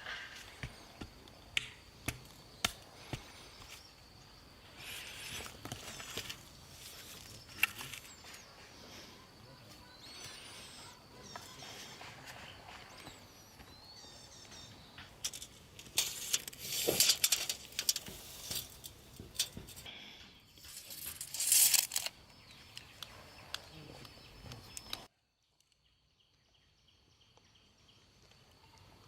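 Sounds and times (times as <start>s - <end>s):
small birds chirping: 0.0s - 29.0s
rustling: 15.2s - 19.9s, 20.6s - 22.1s.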